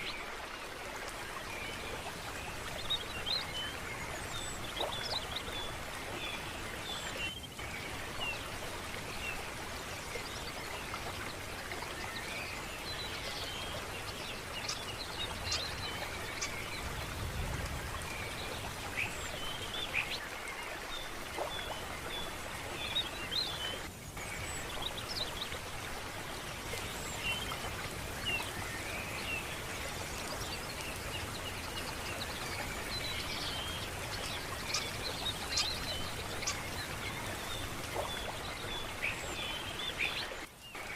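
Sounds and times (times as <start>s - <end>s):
stream water running: 0.0s - 40.9s
small birds chirping: 26.7s - 40.9s.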